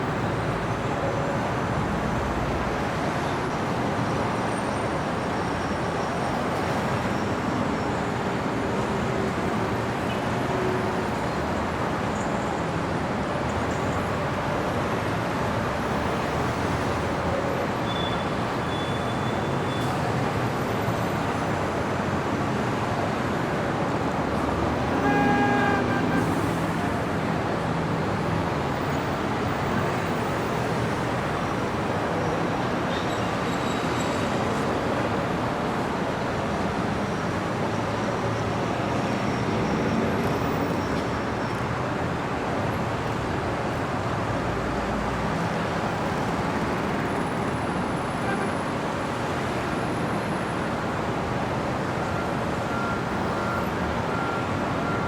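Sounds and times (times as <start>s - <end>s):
city street traffic: 0.0s - 55.0s
vehicle horn: 24.8s - 27.0s.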